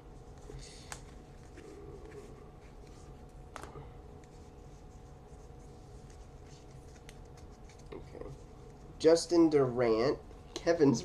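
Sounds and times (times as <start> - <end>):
cards being flipped: 6.0 - 8.0.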